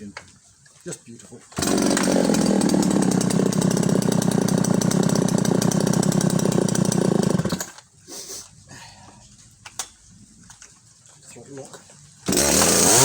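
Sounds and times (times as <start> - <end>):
chainsaw engine at high revs: 1.6 - 7.7, 12.2 - 13.0.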